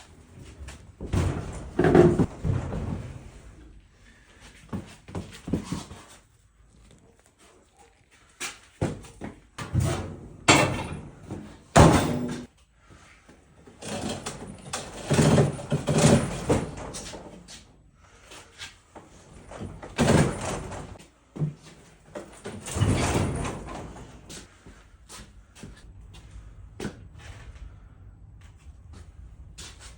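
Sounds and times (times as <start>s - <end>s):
knocks and bangs of objects: 9.6s - 12.5s.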